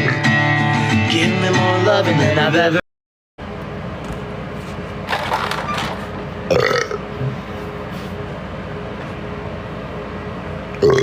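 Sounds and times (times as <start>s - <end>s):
steady background hum: 3.4s - 11.0s
man belching: 6.5s - 7.0s, 10.8s - 11.0s.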